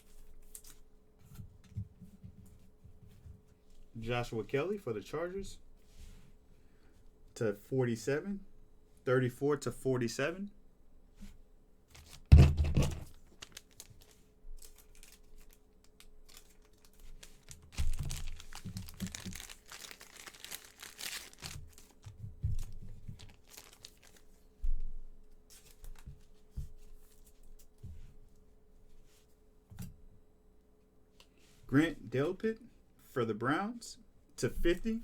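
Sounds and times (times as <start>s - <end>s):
wrapper tearing and crinkling: 11.9s - 12.3s, 13.0s - 24.3s.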